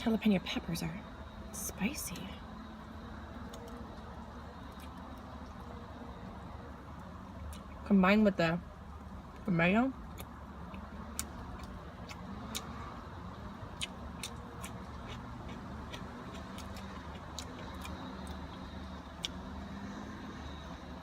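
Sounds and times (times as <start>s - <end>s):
chewing sounds: 3.3s - 5.9s, 10.0s - 20.6s.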